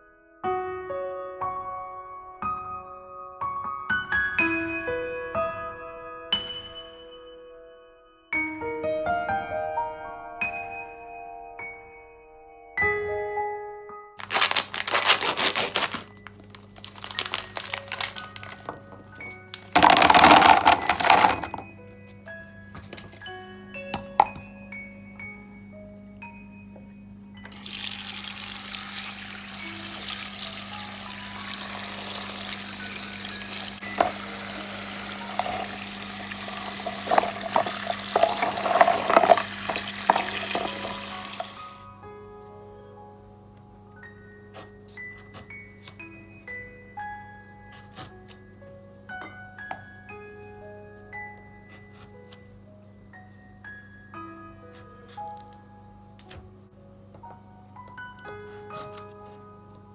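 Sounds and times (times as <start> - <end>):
dense irregular crackling: 14.2 - 21.6
quiet music: 14.2 - 59.9
utensil clinking and tapping: 15.8 - 21.7, 24.0 - 24.5, 31.4 - 41.7
food sizzling in pan: 27.6 - 41.8.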